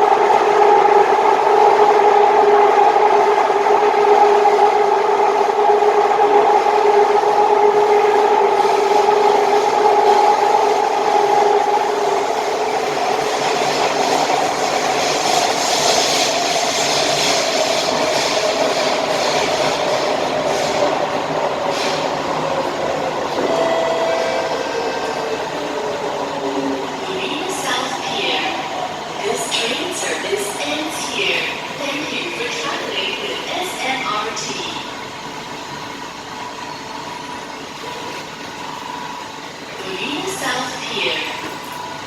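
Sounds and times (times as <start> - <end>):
train running noise: 0.0 - 42.0
two-note train whine: 23.3 - 28.6.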